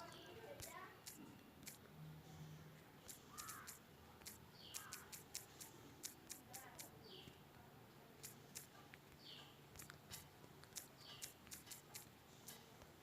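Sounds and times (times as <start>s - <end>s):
soft clicks: 3.0s - 7.6s.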